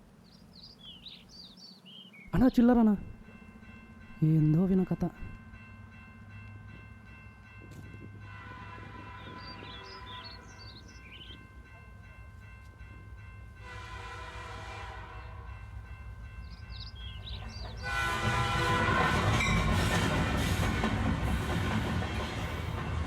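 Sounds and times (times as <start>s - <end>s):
train rumbling past: 0.0s - 23.0s
train horn blast: 8.2s - 10.6s, 13.6s - 15.7s, 17.8s - 20.8s.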